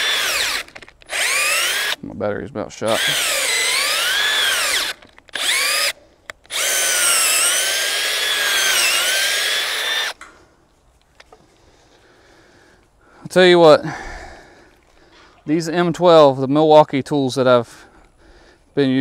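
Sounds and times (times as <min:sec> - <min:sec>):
cordless drill motor whine: 0:00.0 - 0:02.0, 0:02.9 - 0:10.2.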